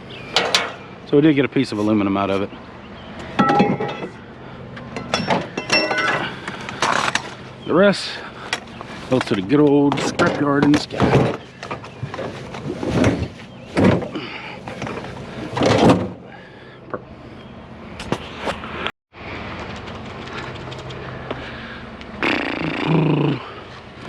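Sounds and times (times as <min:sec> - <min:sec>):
background hum: 0:00.0 - 0:24.0
scrap metal knocks and scrapes: 0:03.3 - 0:04.2.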